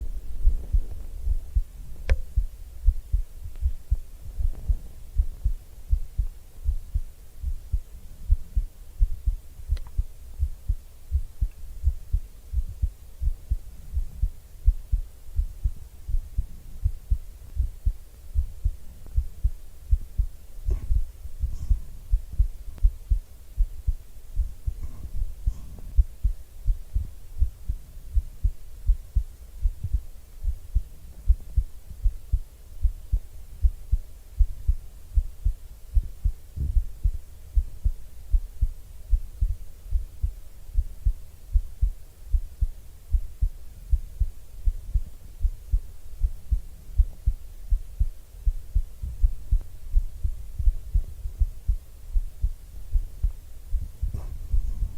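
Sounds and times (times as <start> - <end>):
heartbeat: 0.0 - 54.9
faint clicks: 9.7 - 10.0.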